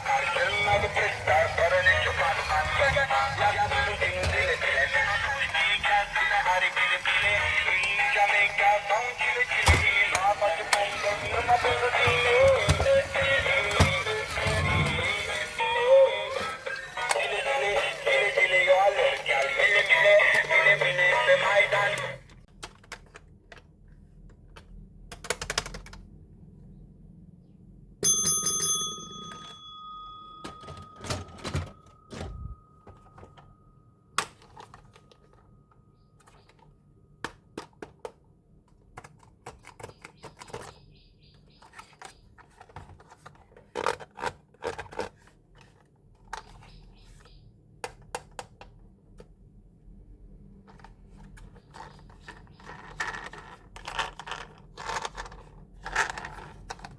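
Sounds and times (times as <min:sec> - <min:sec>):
plastic toys and packaging handled: 0:00.0 - 0:26.2, 0:34.2 - 0:56.9
ringing tone: 0:28.0 - 0:33.2.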